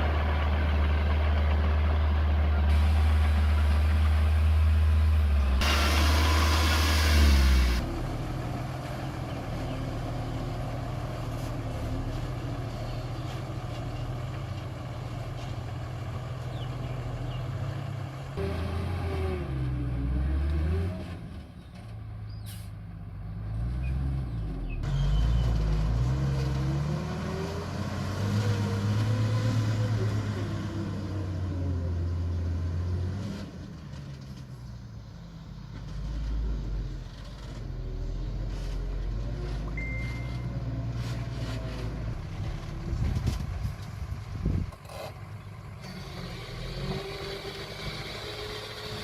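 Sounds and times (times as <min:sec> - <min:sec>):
diesel engine revving: 0:00.0 - 0:49.0.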